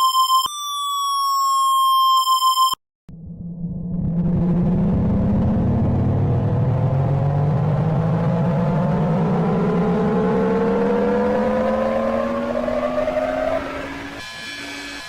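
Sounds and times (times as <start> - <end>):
reversed alarm buzzing tone: 3.1 - 15.0.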